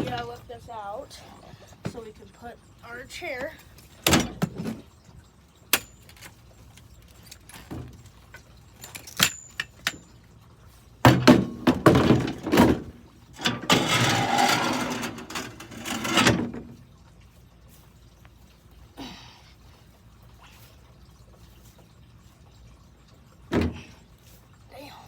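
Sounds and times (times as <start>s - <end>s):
scraping and rustling: 11.4s - 16.7s.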